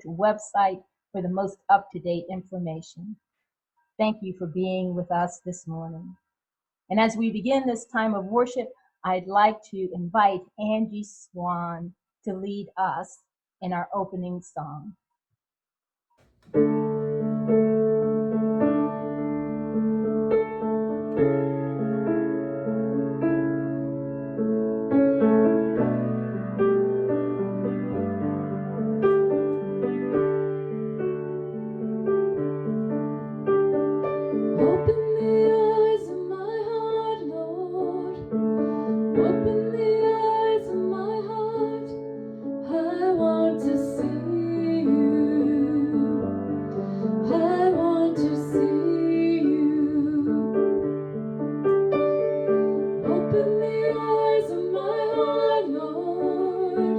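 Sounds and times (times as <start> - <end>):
piano chords: 16.4 - 56.9
woman singing: 34.6 - 38.4, 39.2 - 42.0, 42.6 - 46.4, 47.2 - 50.6, 53.0 - 56.9.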